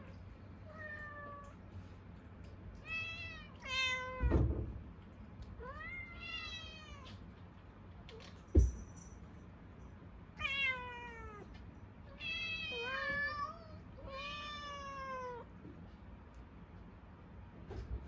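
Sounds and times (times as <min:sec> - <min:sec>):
cats meowing: 0:02.8 - 0:04.4, 0:05.6 - 0:07.2, 0:10.4 - 0:15.5
thump: 0:04.2 - 0:04.8.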